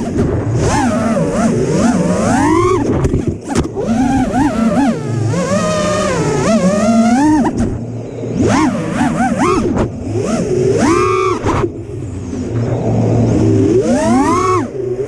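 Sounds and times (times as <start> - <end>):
quadcopter motors whining: 0.0 - 15.0.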